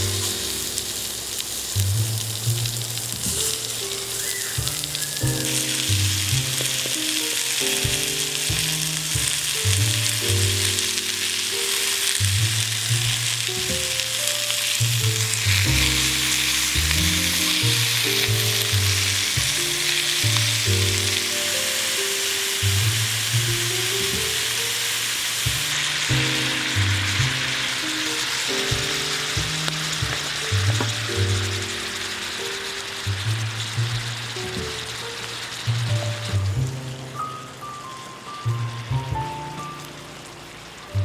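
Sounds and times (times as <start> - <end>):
background music with bass line: 0.0 - 3.8, 4.6 - 14.2, 14.8 - 21.7, 22.6 - 24.6, 25.4 - 32.2, 33.0 - 37.6, 38.4 - 40.0
food sizzling in a pan: 0.0 - 41.0.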